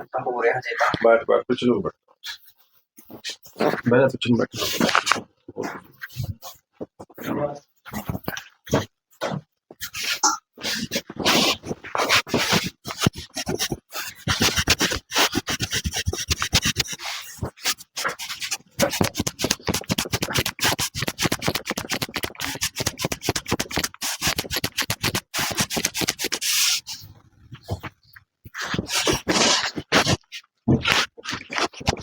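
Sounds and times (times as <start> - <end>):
rapid rubbing strokes: 9.8 - 27.0, 28.5 - 32.0.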